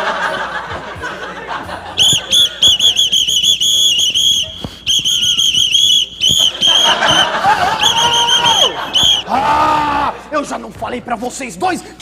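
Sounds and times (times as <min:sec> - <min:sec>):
whistle shrill toots: 0:02.0 - 0:09.2.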